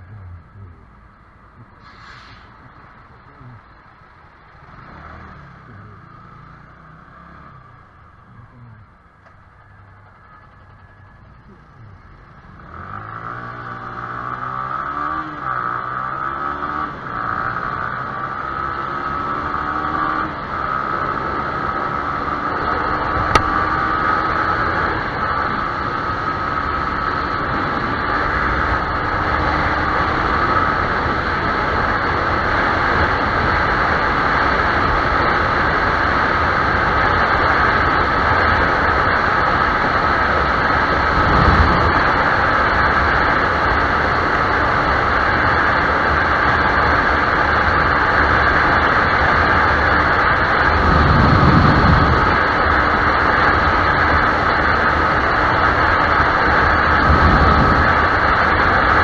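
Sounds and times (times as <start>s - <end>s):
low rumble: 0.0s - 4.6s, 40.9s - 43.7s, 50.2s - 54.0s, 56.0s - 59.0s
motorcycle engine drone: 0.0s - 59.0s
wind and road noise: 0.0s - 59.0s.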